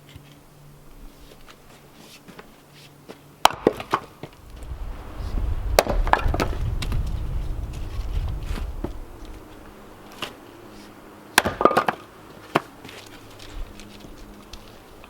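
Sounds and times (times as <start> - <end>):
low rumble: 4.4 - 10.0.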